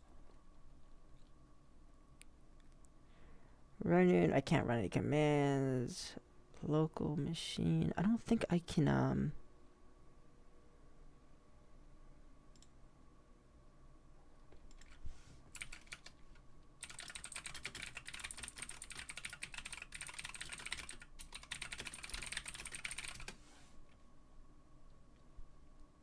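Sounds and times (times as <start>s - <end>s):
typing on computer keyboard: 14.6s - 16.2s, 16.8s - 23.4s.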